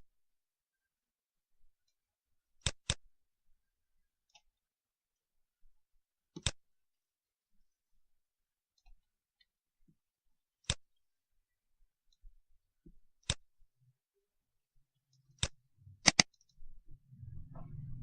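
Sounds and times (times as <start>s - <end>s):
computer mouse clicking: 2.6s - 3.0s, 6.4s - 6.6s, 10.6s - 10.8s, 13.2s - 13.4s, 15.2s - 16.6s
low hum: 15.6s - 18.0s.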